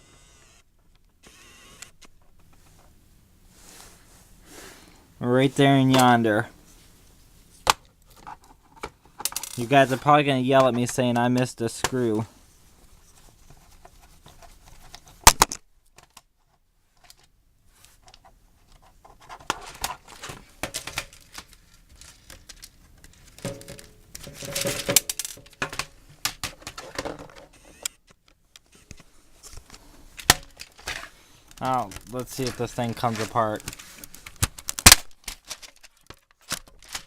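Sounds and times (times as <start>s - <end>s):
plastic clicks rattles and scraping: 17.0s - 37.0s.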